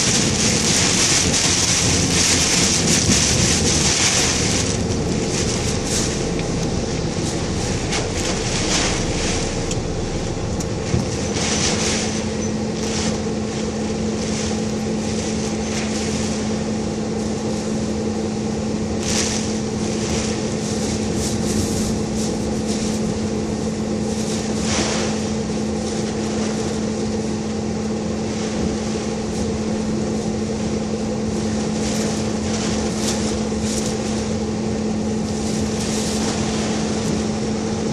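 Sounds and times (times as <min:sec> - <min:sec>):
car road and engine noise: 0:00.0 - 0:37.9
steady hum: 0:00.0 - 0:37.9
wind gusts and spray: 0:00.0 - 0:37.9.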